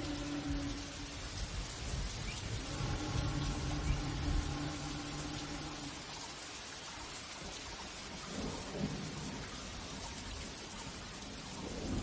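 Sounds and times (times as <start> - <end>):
low rumble: 0.0 - 6.4
rain falling: 0.0 - 12.0.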